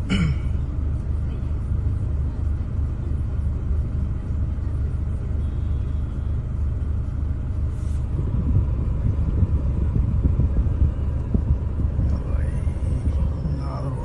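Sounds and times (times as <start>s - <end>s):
car engine running: 0.0s - 14.0s
low thumps: 8.2s - 12.2s.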